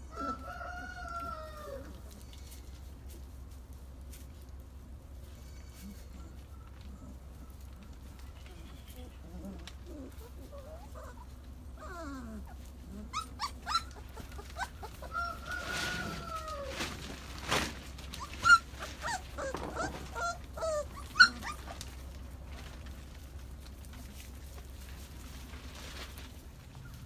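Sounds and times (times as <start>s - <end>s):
puppies whining and yelping: 0.0s - 2.6s, 5.3s - 8.3s, 9.1s - 17.1s, 17.9s - 22.8s, 26.6s - 27.0s.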